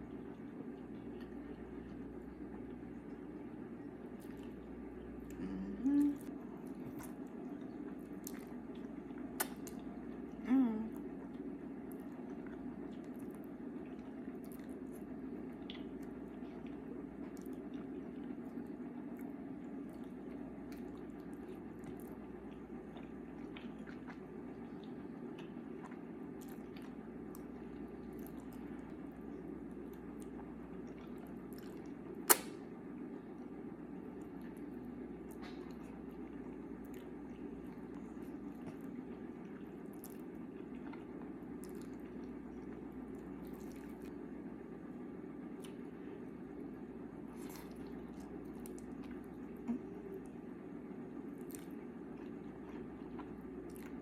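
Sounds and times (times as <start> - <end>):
person chewing food: 0.0 - 32.6, 33.2 - 44.4, 45.5 - 54.0
low background hum: 0.0 - 54.0
smacks and slurps: 6.2 - 10.2, 11.3 - 29.0, 47.3 - 50.4
wet mouth clicks and smacks: 8.2 - 9.9, 32.2 - 32.6.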